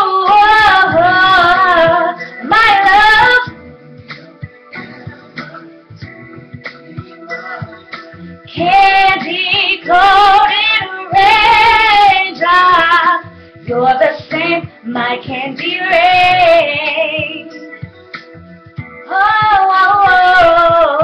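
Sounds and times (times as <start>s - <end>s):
woman singing with vibrato: 0.0s - 3.6s, 8.5s - 17.7s, 19.0s - 21.0s
r and b backing track: 0.0s - 21.0s.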